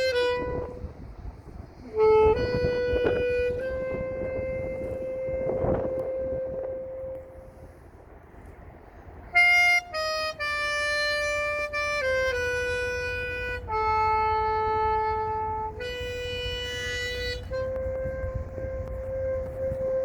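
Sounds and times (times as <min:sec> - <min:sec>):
alto saxophone melody: 0:00.0 - 0:07.9, 0:09.3 - 0:20.0.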